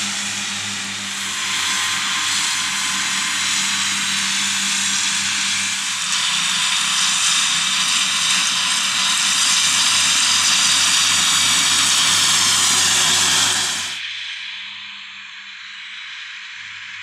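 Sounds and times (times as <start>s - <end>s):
tractor mowing grass: 0.0s - 14.0s.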